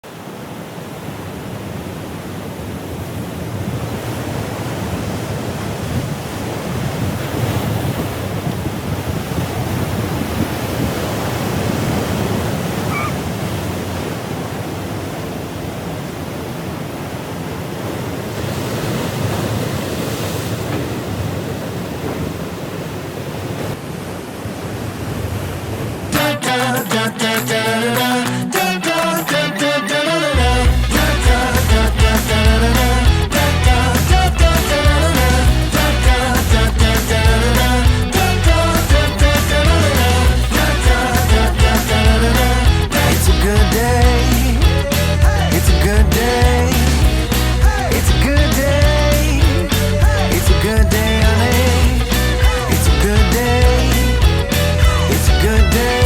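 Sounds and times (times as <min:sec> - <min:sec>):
ocean surf breaking: 0:00.0 - 0:56.0
wind buffeting microphone: 0:03.1 - 0:14.0.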